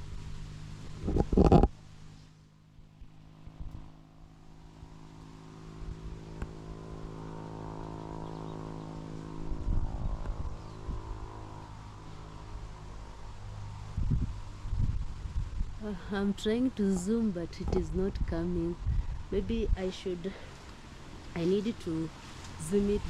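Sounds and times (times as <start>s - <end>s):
low wind or handling bumps: 0.0s - 2.0s, 13.9s - 23.0s
distant vehicle engine passing: 1.9s - 23.0s.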